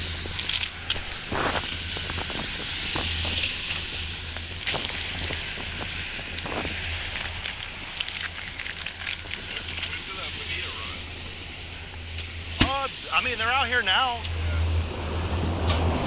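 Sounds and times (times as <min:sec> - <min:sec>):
wind on microphone: 0:00.0 - 0:08.0
boat motor humming: 0:00.0 - 0:16.0.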